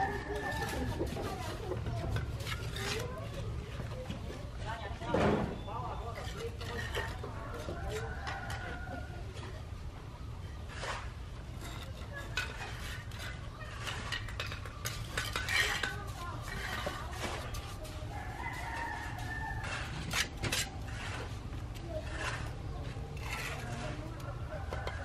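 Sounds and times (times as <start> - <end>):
rooster crowing: 18.1 - 19.9.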